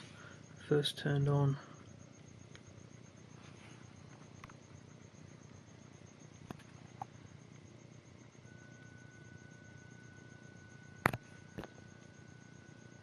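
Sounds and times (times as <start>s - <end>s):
faint steady high tone: 0.0s - 13.0s.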